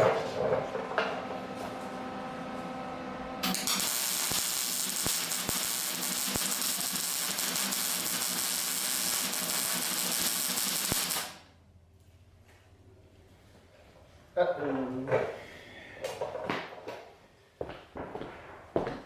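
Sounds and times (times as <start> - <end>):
arc welding crackling hiss: 3.4 - 11.4.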